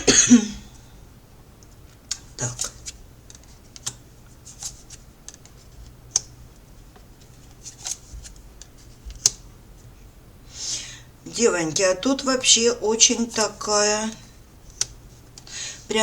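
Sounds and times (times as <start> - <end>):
cards handled on a table: 1.9 - 6.3, 7.0 - 9.4.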